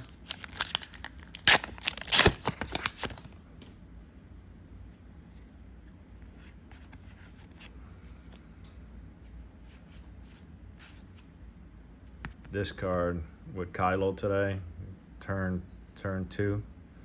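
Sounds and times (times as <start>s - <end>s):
trading cards flipped through: 0.0s - 3.8s, 5.3s - 7.7s
low room hum: 0.0s - 17.0s.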